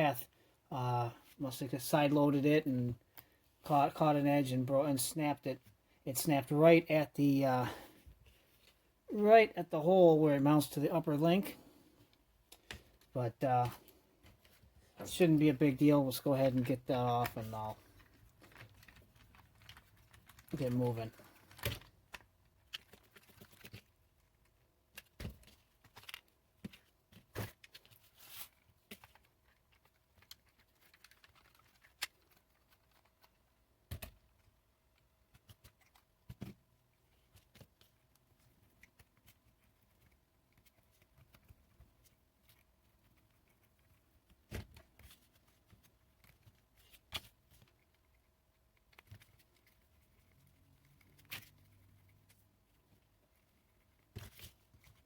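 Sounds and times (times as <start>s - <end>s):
plastic and metal parts handled: 16.1s - 55.0s.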